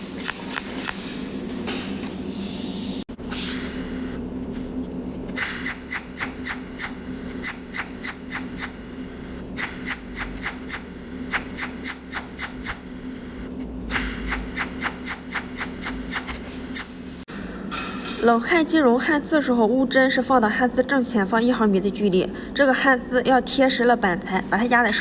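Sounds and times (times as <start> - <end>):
welding machine sharp cracks: 0.0 - 1.1, 5.4 - 8.9, 9.6 - 17.0
low steady hum: 1.3 - 25.0.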